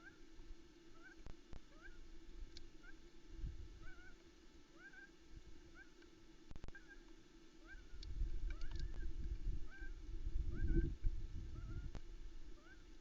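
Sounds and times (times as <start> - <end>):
squeaky rising bird call: 1.0 - 2.0, 12.6 - 12.9.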